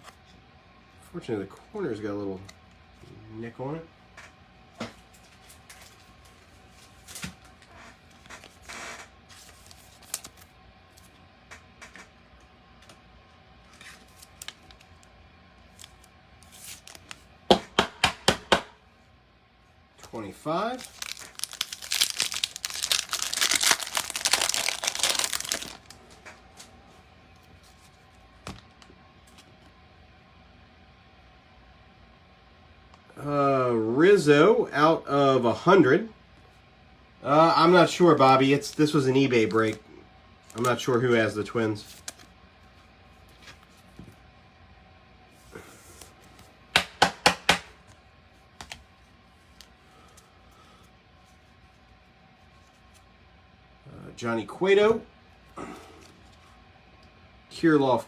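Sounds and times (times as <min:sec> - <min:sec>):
wrapper crinkling: 0:15.7 - 0:17.3, 0:20.1 - 0:26.2.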